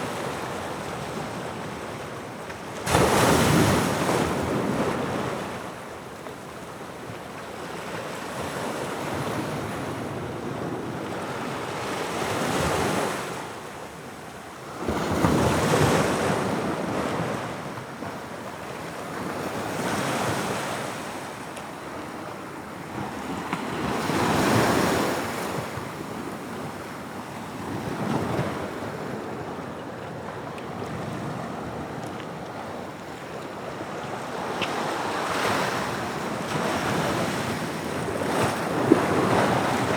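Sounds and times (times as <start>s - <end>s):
waves breaking on shore: 30.2s - 39.9s.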